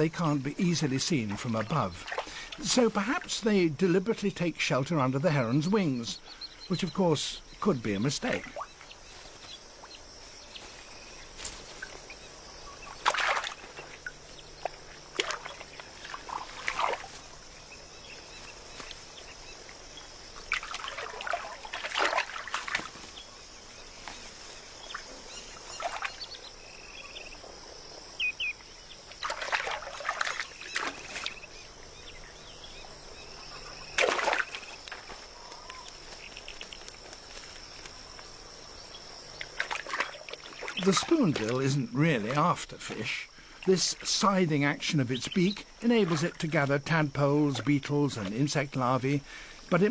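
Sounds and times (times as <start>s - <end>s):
shallow water splashing: 0.0s - 3.6s, 7.6s - 23.3s, 23.9s - 26.4s, 29.0s - 32.0s, 33.6s - 38.1s, 39.3s - 48.6s
bird chirps: 23.0s - 27.5s, 28.1s - 29.3s, 43.5s - 46.2s
steady high hiss: 40.2s - 49.9s.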